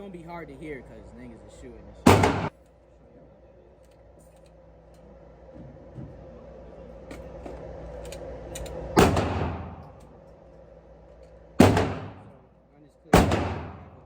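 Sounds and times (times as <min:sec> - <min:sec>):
loud echoing gunshots: 0:02.0 - 0:02.5, 0:09.0 - 0:10.0, 0:11.6 - 0:12.4, 0:13.1 - 0:14.0
faint distant gunfire cracks: 0:13.2 - 0:14.0.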